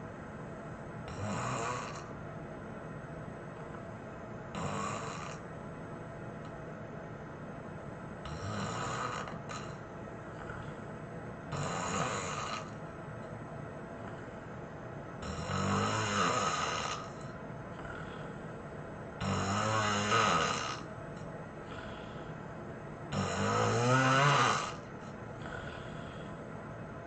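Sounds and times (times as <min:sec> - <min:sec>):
loud rattling snores: 0:01.1 - 0:02.1, 0:04.5 - 0:05.5, 0:08.3 - 0:09.8, 0:10.4 - 0:10.8, 0:11.5 - 0:12.8, 0:15.2 - 0:18.3, 0:19.2 - 0:20.9, 0:23.1 - 0:26.2
soft breathing: 0:09.6 - 0:11.2, 0:14.0 - 0:14.8, 0:17.0 - 0:18.8, 0:21.6 - 0:22.7, 0:24.7 - 0:26.7.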